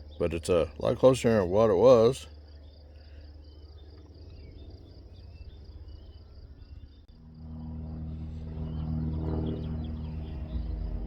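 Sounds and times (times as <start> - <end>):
riding mower engine running: 3.1 - 11.0.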